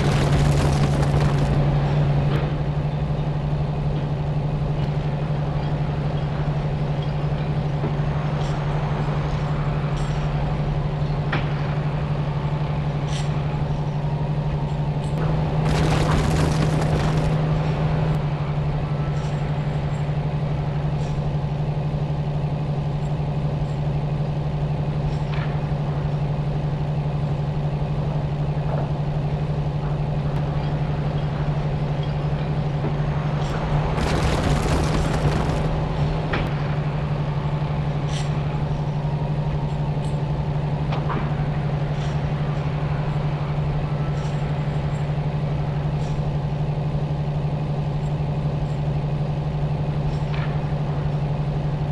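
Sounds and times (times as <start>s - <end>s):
rush of noise: 0.0s - 2.4s, 15.4s - 18.1s, 33.7s - 36.5s
engine humming: 0.0s - 51.9s.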